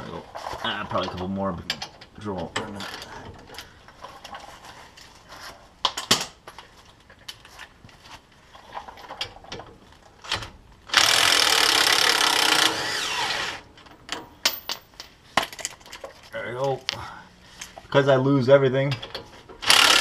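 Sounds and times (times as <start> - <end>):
drill running with whine: 10.9 - 13.6, 19.7 - 20.0.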